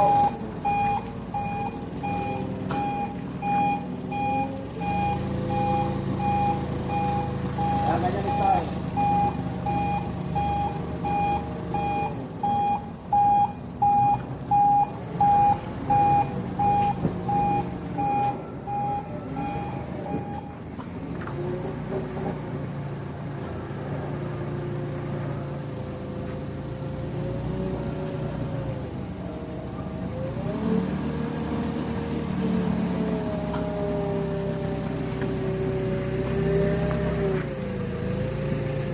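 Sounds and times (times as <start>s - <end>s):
vehicle reversing alarm beeping: 0.0s - 20.7s
engine humming: 0.0s - 38.9s.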